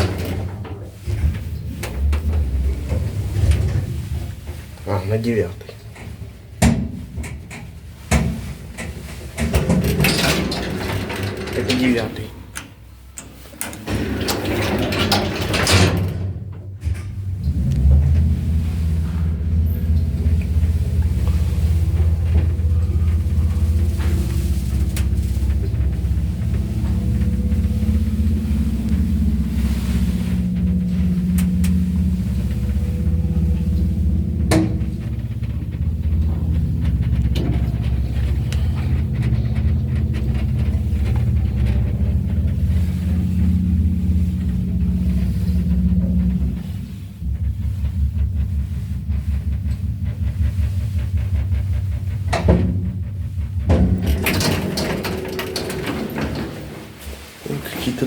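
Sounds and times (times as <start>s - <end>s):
lift car scraping: 0.0s - 58.0s
lift running low hum: 0.0s - 58.0s
lift mechanism clicks: 53.6s - 57.2s.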